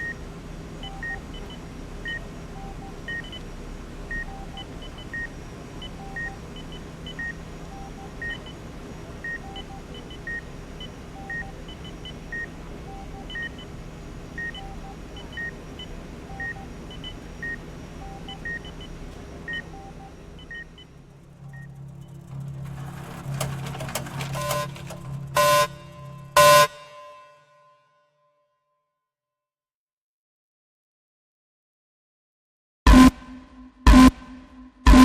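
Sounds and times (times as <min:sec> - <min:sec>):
steady low hum: 0:00.0 - 0:26.5
fainter higher and lower beeps: 0:09.3 - 0:23.0.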